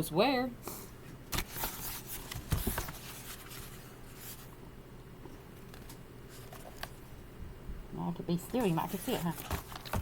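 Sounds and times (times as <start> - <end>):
low steady hum: 0.0 - 10.0
paper rustling: 1.3 - 4.5, 5.6 - 7.0, 8.5 - 10.0.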